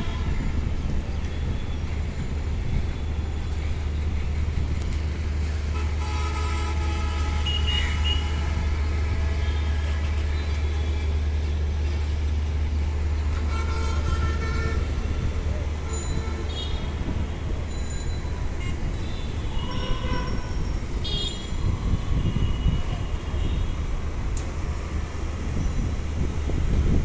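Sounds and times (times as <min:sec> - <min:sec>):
traffic rumble: 0:00.0 - 0:27.0
car horns: 0:05.7 - 0:10.1, 0:13.3 - 0:17.1, 0:18.6 - 0:22.8.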